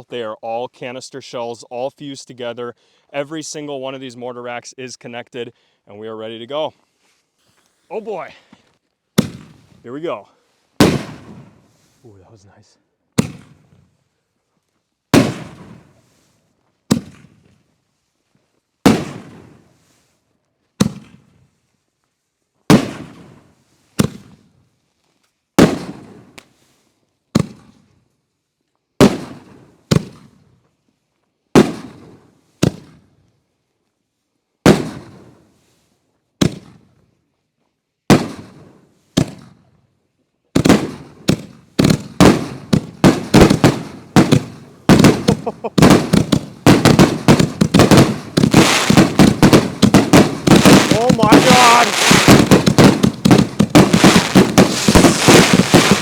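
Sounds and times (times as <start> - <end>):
fireworks booming with echo: 9.2 - 9.8, 10.8 - 11.6, 13.2 - 13.8, 15.1 - 16.0, 16.9 - 17.5, 18.9 - 19.6, 22.7 - 23.4, 25.6 - 26.3, 29.0 - 30.4, 31.6 - 33.0, 34.7 - 35.4, 38.1 - 39.7, 40.6 - 56.0.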